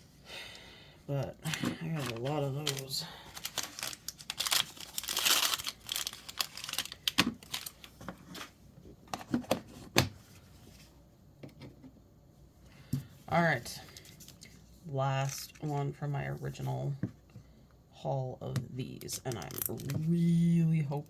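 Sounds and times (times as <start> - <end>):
plastic packaging crinkling: 1.4 - 9.3, 19.1 - 20.2.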